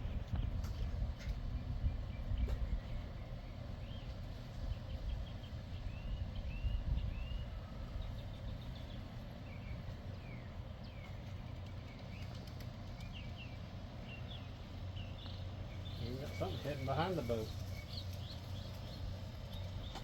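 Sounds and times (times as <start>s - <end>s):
steady low rumble: 0.0s - 12.2s
birds chirping: 0.0s - 20.0s.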